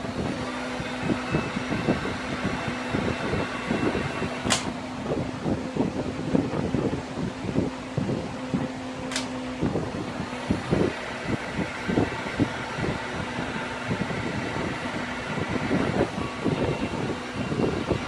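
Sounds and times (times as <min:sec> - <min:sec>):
heat gun motor hum: 0:00.0 - 0:05.0, 0:08.9 - 0:18.0
low airflow rumbling: 0:00.0 - 0:18.0
sharp click: 0:04.4 - 0:04.8, 0:09.1 - 0:09.4.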